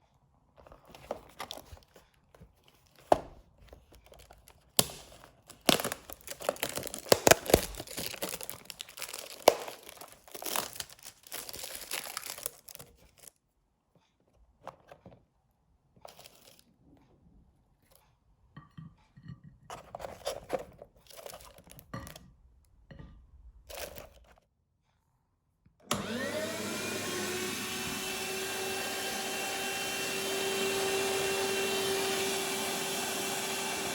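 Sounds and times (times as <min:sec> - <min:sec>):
crackling handling noises: 0:00.5 - 0:15.4, 0:16.0 - 0:16.8, 0:19.7 - 0:22.4, 0:23.6 - 0:24.5
electric meat grinder motor whine: 0:25.8 - 0:33.9.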